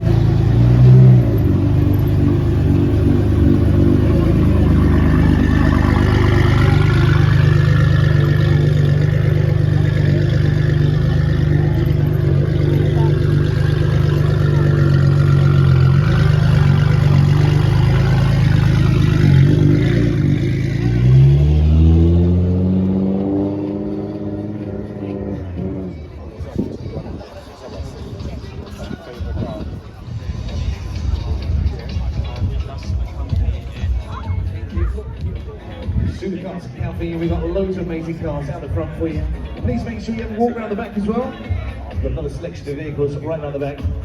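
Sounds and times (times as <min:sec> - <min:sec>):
car engine idling: 0:00.0 - 0:22.9.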